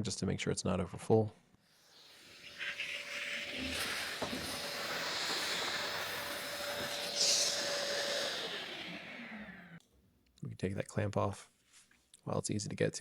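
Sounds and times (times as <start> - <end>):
vacuum cleaner whining: 1.8 - 9.8.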